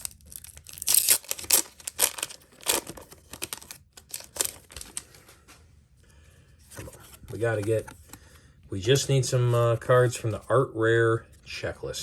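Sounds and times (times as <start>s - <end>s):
foil wrapper crinkling and tearing: 0.0s - 5.2s.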